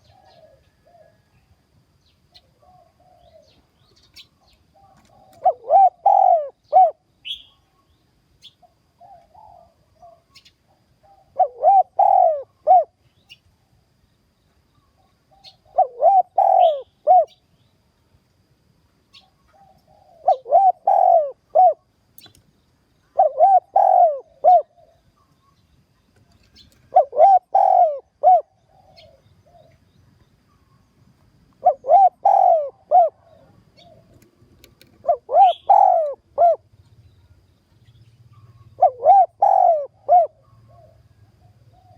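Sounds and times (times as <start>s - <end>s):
dove cooing: 0.0s - 1.4s, 2.4s - 7.6s, 8.4s - 13.0s, 15.0s - 17.4s, 19.2s - 21.9s, 23.1s - 25.2s, 26.2s - 29.9s, 31.5s - 37.3s, 38.3s - 41.9s.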